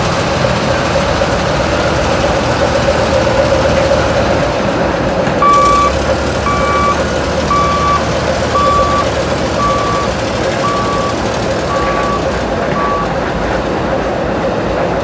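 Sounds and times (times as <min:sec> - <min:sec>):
diesel engine running: 0:00.0 - 0:15.0
backup alarm beeping: 0:05.4 - 0:13.3.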